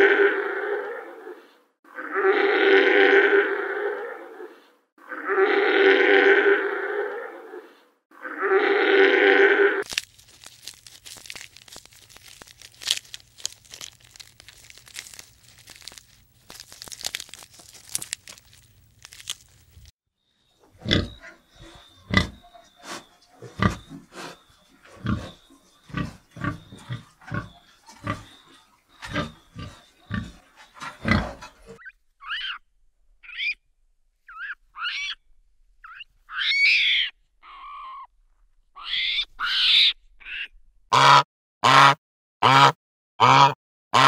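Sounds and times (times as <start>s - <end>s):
animal grunting pulses: 20.7s - 31.8s
fast loud pitched calls: 35.8s - 38.0s
sliding high animal calls: 35.8s - 38.1s.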